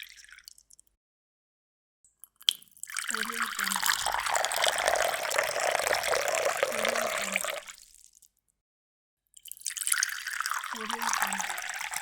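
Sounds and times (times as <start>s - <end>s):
water pouring and splashing: 2.8s - 7.9s, 9.4s - 12.0s.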